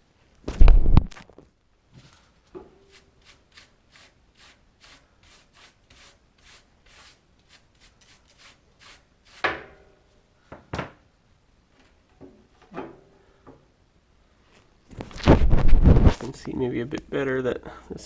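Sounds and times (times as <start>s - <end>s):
brush scrubbing ceramic: 2.8s - 9.4s.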